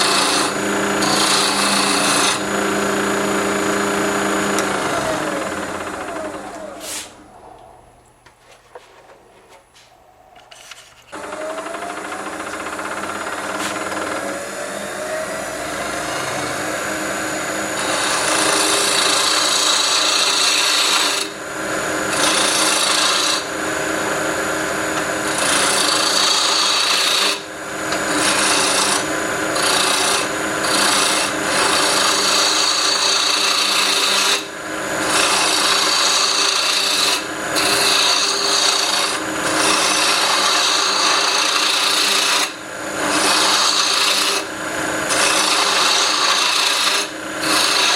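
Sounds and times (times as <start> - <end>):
lathe motor hum: 0.0 - 7.7, 11.1 - 47.9
tool scraping spinning wood: 0.0 - 7.7, 8.3 - 47.9.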